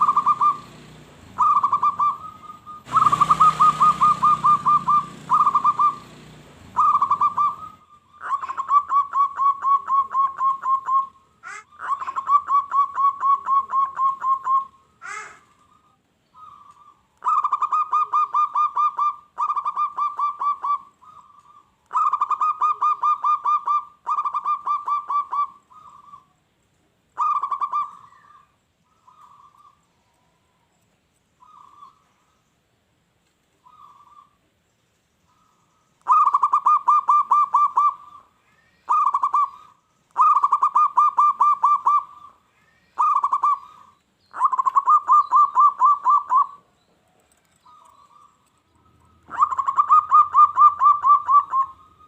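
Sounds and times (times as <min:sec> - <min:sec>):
dove cooing: 0:00.0 - 0:26.4, 0:27.2 - 0:29.8, 0:31.4 - 0:32.1, 0:33.6 - 0:34.4, 0:35.3 - 0:52.0.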